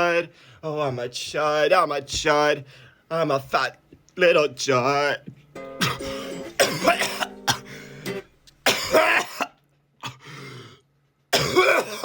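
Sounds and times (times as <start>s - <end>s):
strummed acoustic guitar chord: 5.6s - 9.0s
person coughing harshly: 5.7s - 7.9s, 8.6s - 10.2s, 11.3s - 12.0s
throat clearing: 5.8s - 7.7s, 11.4s - 12.0s.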